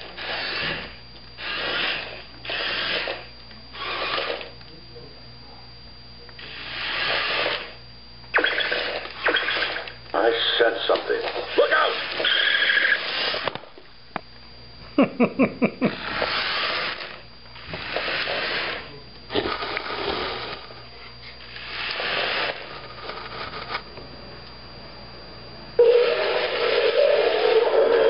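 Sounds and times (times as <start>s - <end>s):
toy motor whirr: 0.0s - 4.6s, 6.4s - 7.8s, 8.4s - 13.8s, 15.8s - 20.8s, 21.4s - 23.8s, 25.8s - 28.0s
short electronic blips: 8.3s - 13.4s.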